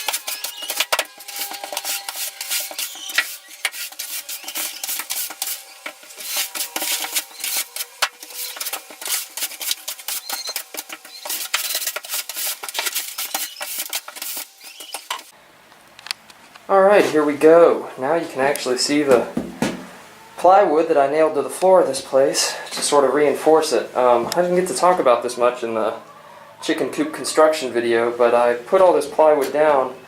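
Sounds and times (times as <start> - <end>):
push broom scraping floor: 0.0 - 15.3.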